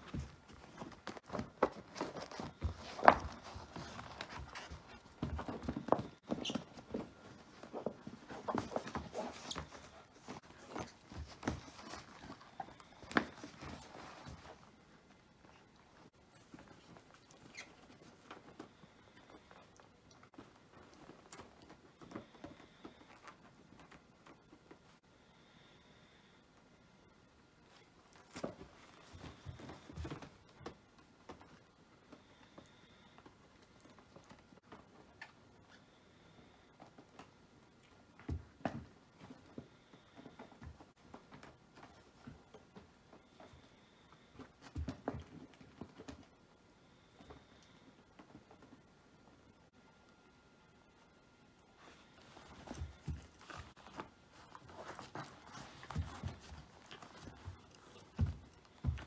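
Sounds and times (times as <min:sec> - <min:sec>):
puppy chewing a toy: 0:51.8 - 0:59.0.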